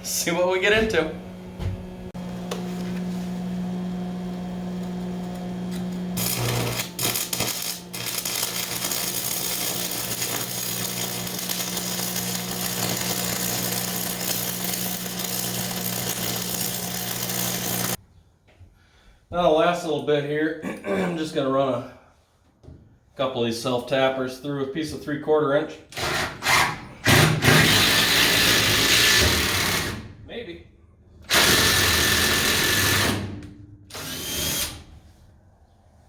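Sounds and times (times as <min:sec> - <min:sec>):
welder low hum: 0:00.0 - 0:18.0
welding arc crackling: 0:06.2 - 0:18.0.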